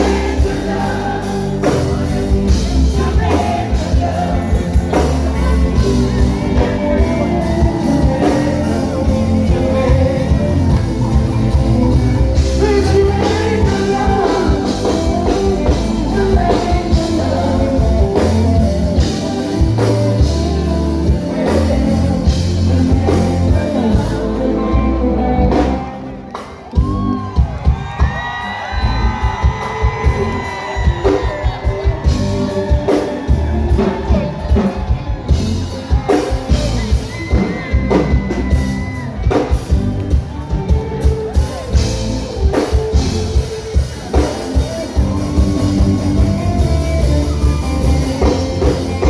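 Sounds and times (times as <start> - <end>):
vocalist singing: 0.0 - 26.3
live band music: 0.0 - 49.0.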